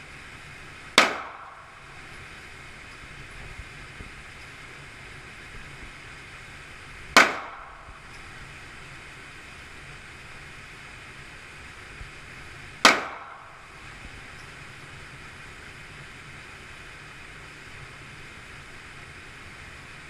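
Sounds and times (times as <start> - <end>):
background hiss: 0.0 - 20.0
pistol shots: 0.9 - 2.0, 7.1 - 8.1, 12.8 - 13.6.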